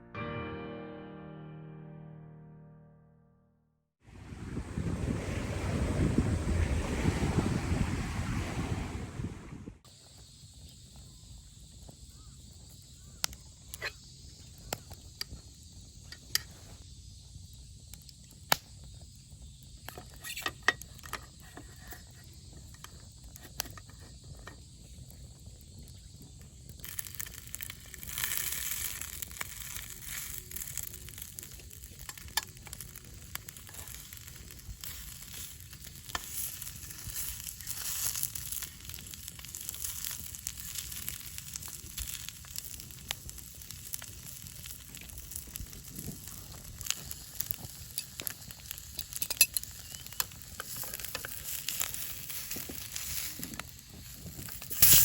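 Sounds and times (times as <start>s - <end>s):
food sizzling and crackling: 25.4s - 55.0s.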